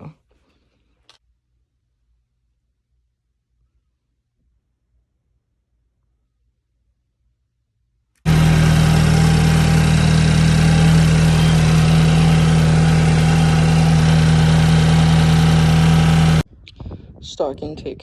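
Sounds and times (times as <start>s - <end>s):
car engine idling: 8.3s - 16.4s.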